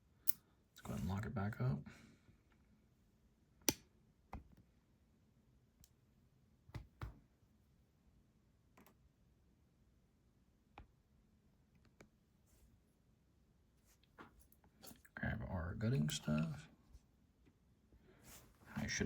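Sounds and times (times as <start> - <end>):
lock and tools clicking: 0.2 - 0.4.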